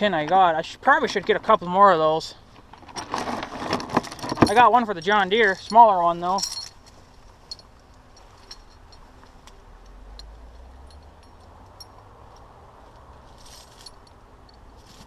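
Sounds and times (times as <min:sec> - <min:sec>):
brief rustle: 0:13.3 - 0:14.1.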